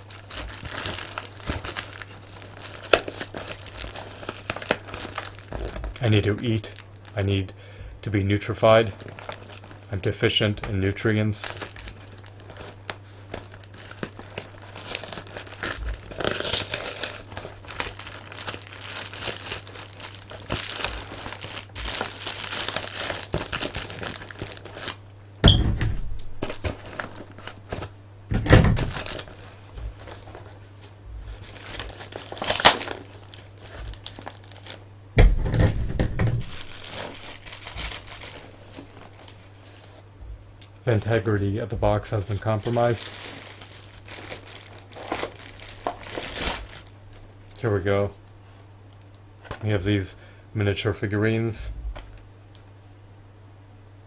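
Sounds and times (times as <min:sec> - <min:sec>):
packing material crinkling: 0:00.0 - 0:07.5, 0:08.5 - 0:25.1, 0:26.0 - 0:28.0, 0:28.7 - 0:49.8
faint low hum: 0:00.0 - 0:54.0
cardboard box tearing: 0:14.8 - 0:25.0, 0:31.4 - 0:33.1
handling bumps: 0:35.2 - 0:37.1.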